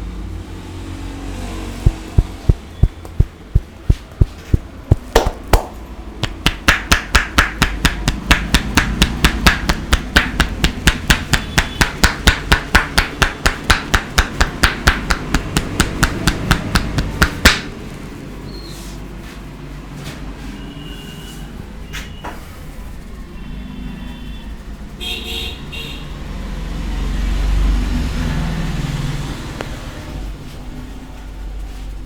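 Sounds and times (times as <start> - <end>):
hands tapping on head: 1.8 - 17.7.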